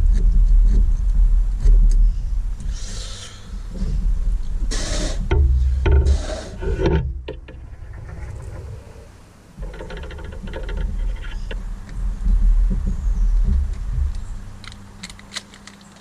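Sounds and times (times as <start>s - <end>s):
rubbing and scraping: 0.0s - 16.0s
steady low rumble: 0.0s - 16.0s
small clicks and rattles: 9.6s - 12.0s, 13.4s - 16.0s.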